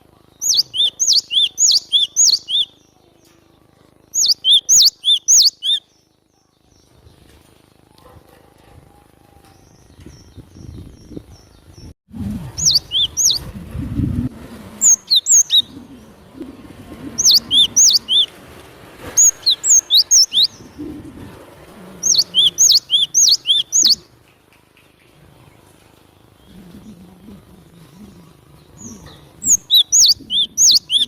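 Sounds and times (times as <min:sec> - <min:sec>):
bird whistling sharp notes: 0:00.4 - 0:02.7, 0:04.2 - 0:05.8, 0:12.6 - 0:13.4, 0:14.8 - 0:15.7, 0:17.2 - 0:18.3, 0:19.2 - 0:20.6, 0:22.0 - 0:24.0, 0:29.4 - 0:31.0.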